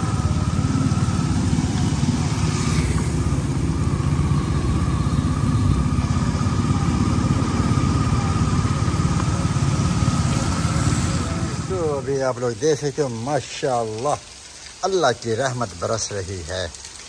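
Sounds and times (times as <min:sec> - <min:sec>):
faint steady high whine: 0:00.0 - 0:12.9
heavy rain pouring: 0:00.0 - 0:17.0.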